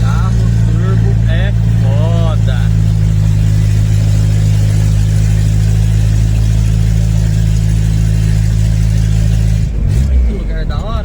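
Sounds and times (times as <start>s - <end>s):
turbocharged engine droning: 0.0s - 11.0s.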